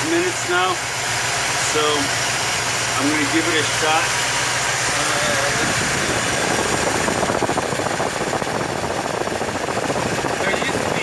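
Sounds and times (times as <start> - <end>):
truck engine pulsing: 0.0 - 11.0.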